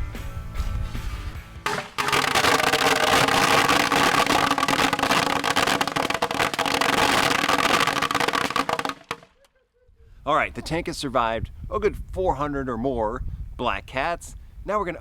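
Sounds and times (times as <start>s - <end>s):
firecrackers crackling in glass tank: 1.7s - 9.3s.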